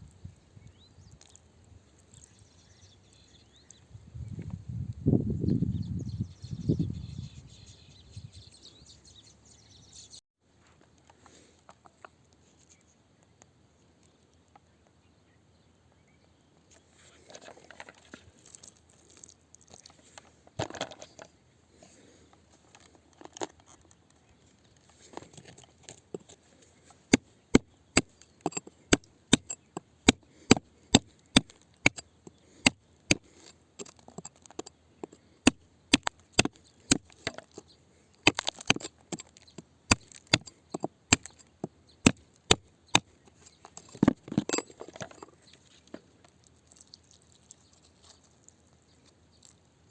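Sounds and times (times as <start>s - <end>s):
digging tool scraping rock: 25.0s - 46.1s
tool striking rock: 27.1s - 37.6s, 38.2s - 45.3s.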